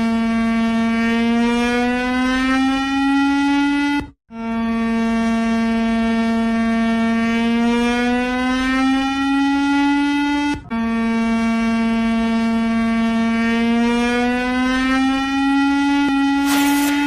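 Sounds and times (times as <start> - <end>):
buzzy low emergency alert tone: 3.3 - 14.4.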